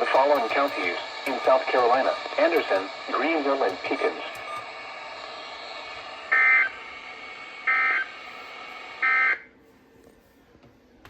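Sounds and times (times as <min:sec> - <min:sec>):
warbling data tones: 0:00.0 - 0:06.9, 0:07.5 - 0:08.2
radio hiss: 0:00.0 - 0:09.4.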